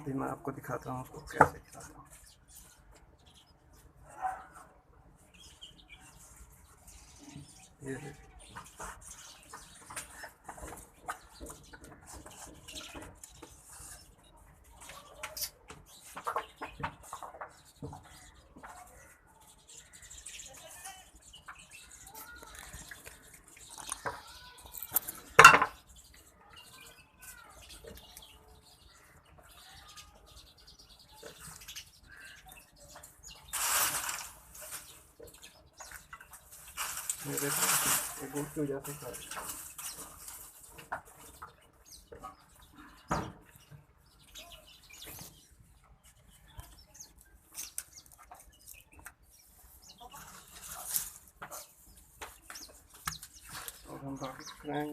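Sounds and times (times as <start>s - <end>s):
chirping bird calls: 0.0s - 54.9s
goats eating clicks and rustles: 5.0s - 54.9s.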